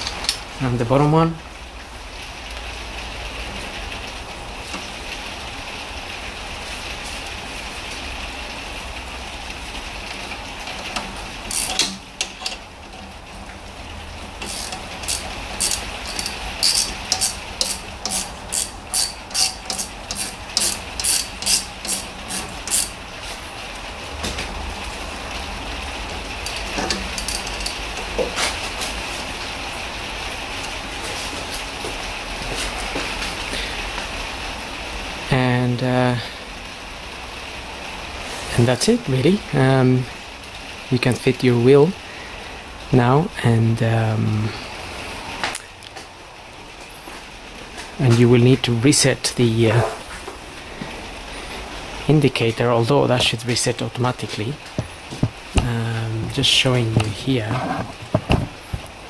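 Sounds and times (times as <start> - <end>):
steady hiss: 0.0 - 59.0
ratchet wrench clicking: 11.5 - 12.6, 14.4 - 23.0, 26.4 - 27.9.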